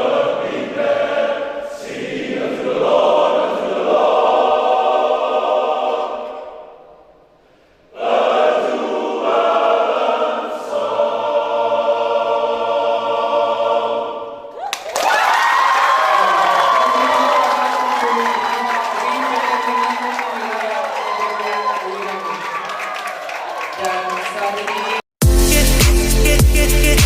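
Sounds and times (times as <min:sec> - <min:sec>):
men's choir singing: 0:00.0 - 0:06.8, 0:07.9 - 0:14.5
audience cheering and applause: 0:14.6 - 0:25.1.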